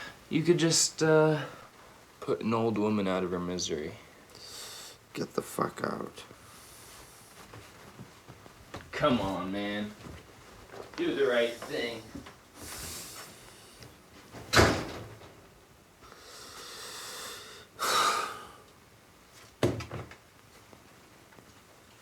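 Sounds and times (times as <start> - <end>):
hissing and rustling: 6.3 - 17.2.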